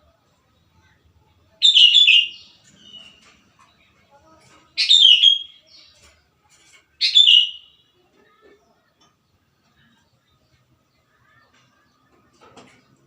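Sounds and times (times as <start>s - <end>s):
bulbul singing: 1.5s - 3.9s, 4.6s - 6.1s, 7.0s - 8.0s.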